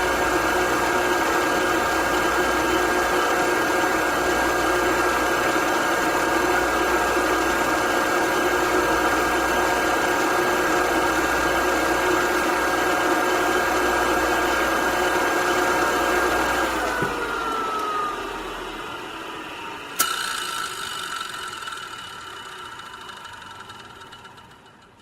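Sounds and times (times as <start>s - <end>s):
electric motor whining: 8.4s - 22.2s.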